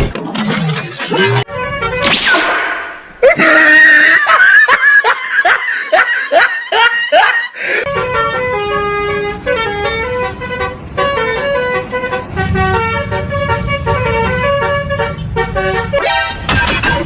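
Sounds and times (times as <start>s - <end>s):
bus horn playing a tune: 1.5s - 2.1s, 7.8s - 16.5s
low engine rumble: 7.9s - 16.0s.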